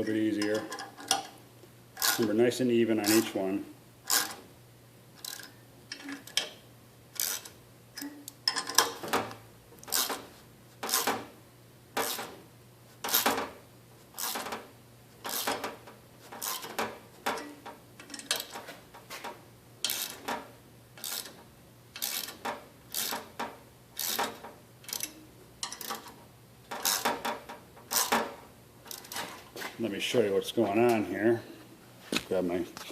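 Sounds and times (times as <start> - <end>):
ratchet clicking: 7.2 - 7.5, 19.8 - 20.2, 21.0 - 21.4, 22.0 - 23.3, 24.0 - 26.1.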